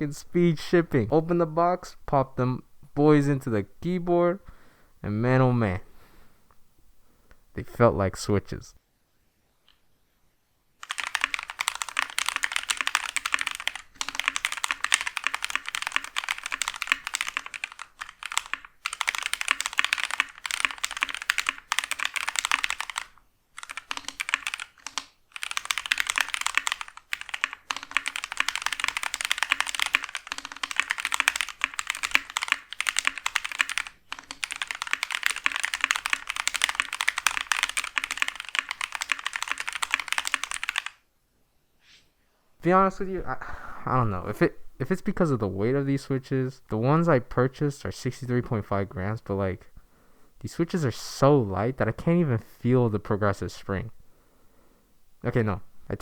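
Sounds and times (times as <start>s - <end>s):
fast typing on mechanical keyboard: 10.8s - 41.0s.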